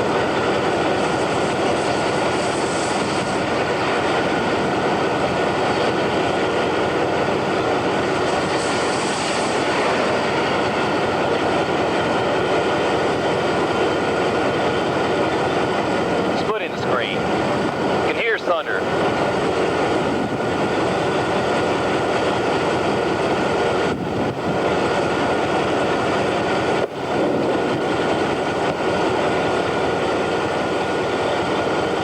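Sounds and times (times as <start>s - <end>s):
strong wind rushing: 9.5s - 30.7s.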